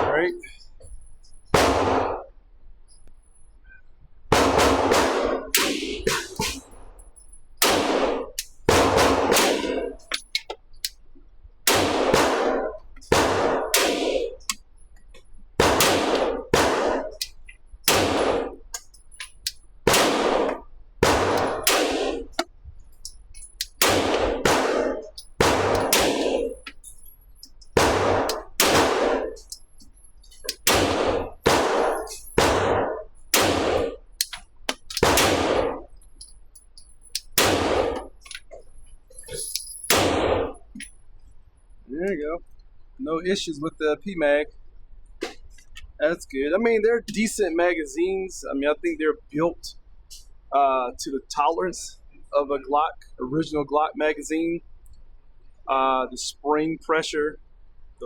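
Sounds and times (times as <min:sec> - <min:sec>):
pistol shots: 0:01.5 - 0:02.2, 0:04.3 - 0:06.8, 0:07.6 - 0:10.5, 0:11.7 - 0:14.6, 0:15.6 - 0:22.5, 0:23.6 - 0:26.8, 0:27.8 - 0:29.6, 0:30.4 - 0:35.9, 0:37.1 - 0:38.3, 0:39.8 - 0:40.6.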